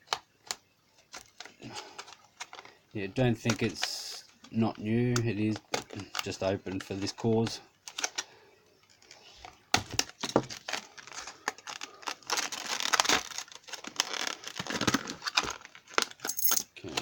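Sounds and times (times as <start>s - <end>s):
packet tearing and crinkling: 9.9s - 16.3s.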